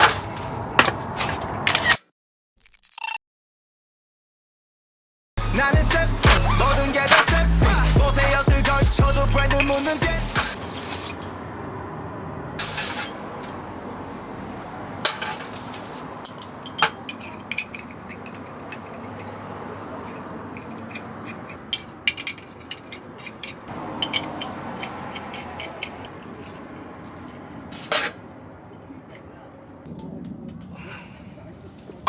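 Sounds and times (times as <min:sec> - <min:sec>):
light clicks and clinks: 0:15.3 - 0:27.4.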